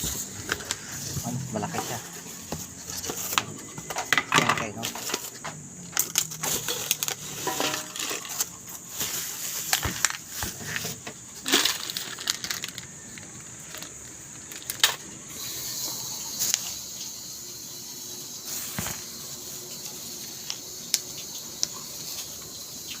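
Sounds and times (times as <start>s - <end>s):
steady high hiss: 0.0s - 23.0s
packaging rustling: 6.0s - 15.0s.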